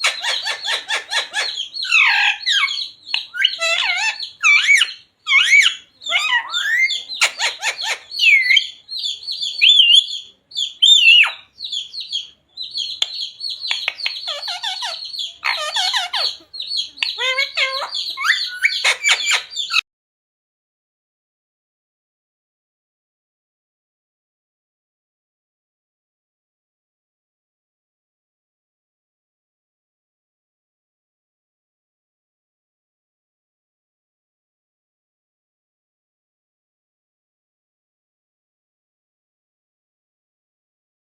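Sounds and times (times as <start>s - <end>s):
parrot squawking and chirping: 0.0s - 19.8s.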